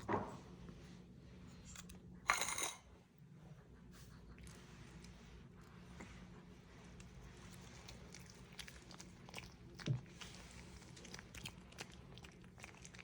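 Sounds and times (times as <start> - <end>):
dog chewing and crunching food: 4.0 - 13.0.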